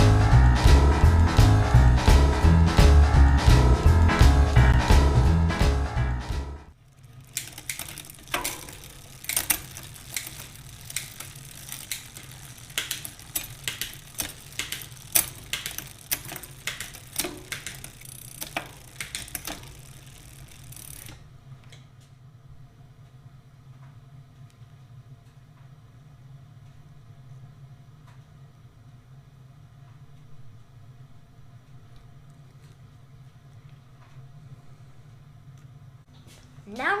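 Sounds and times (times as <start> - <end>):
bicycle parts clicking: 6.8 - 21.9.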